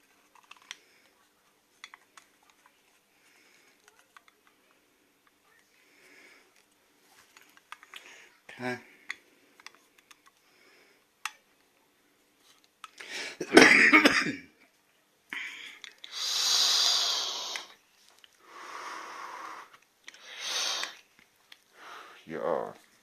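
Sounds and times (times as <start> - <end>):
person coughing: 13.4 - 14.5
long hissing breaths: 15.4 - 17.8, 18.4 - 21.1, 21.7 - 22.3.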